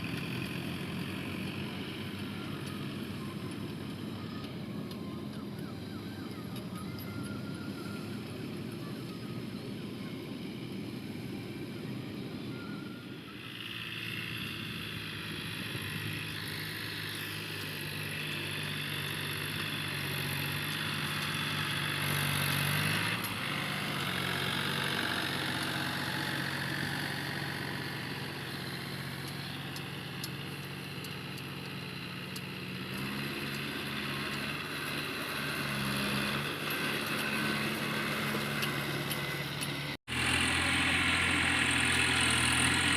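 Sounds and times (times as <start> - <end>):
diesel tractor engine running: 0.0 - 42.9.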